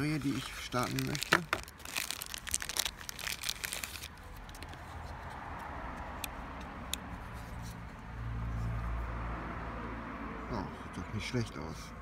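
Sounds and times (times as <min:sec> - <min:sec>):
packaging crinkling and rustling: 0:00.0 - 0:05.0.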